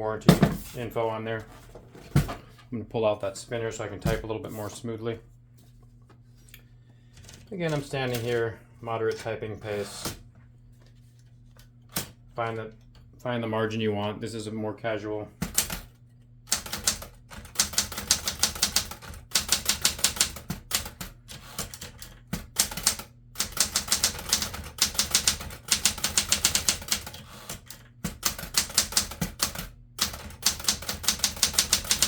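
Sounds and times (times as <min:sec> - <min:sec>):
typewriter keystrokes: 0:16.5 - 0:32.0.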